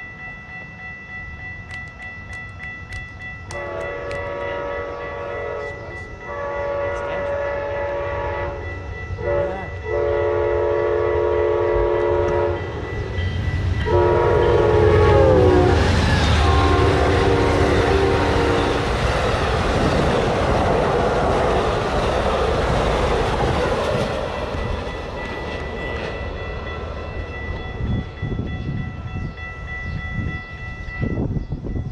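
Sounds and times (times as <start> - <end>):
train rumble and wheel clatter: 0.0 - 31.9
train air horn blasts: 3.5 - 12.7, 13.8 - 19.4.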